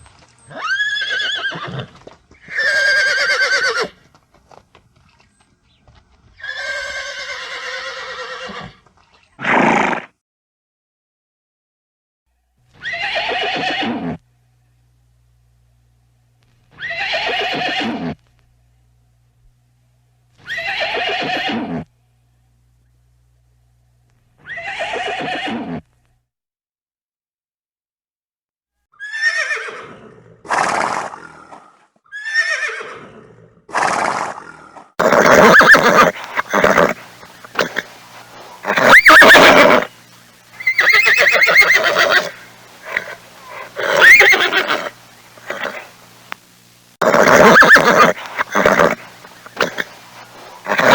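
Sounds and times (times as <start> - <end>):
horse whinnying: 0.4 - 4.0, 6.4 - 8.8, 9.4 - 10.1, 12.8 - 14.2, 16.7 - 18.2, 20.4 - 21.9, 24.4 - 25.9, 28.9 - 40.0, 40.6 - 45.9, 47.0 - 50.9.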